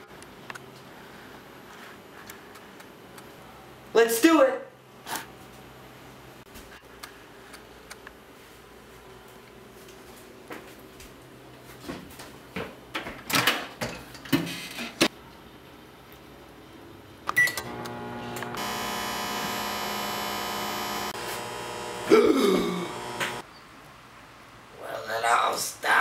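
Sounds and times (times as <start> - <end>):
microwave oven humming: 17.3 - 23.4.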